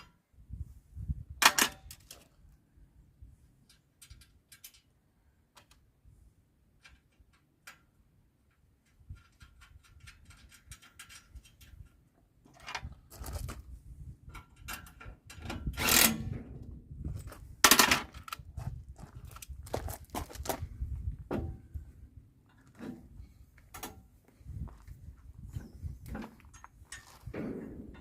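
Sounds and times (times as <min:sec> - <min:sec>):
metal clanks and scrapes: 0:08.8 - 0:13.6, 0:22.5 - 0:24.1, 0:25.4 - 0:28.0.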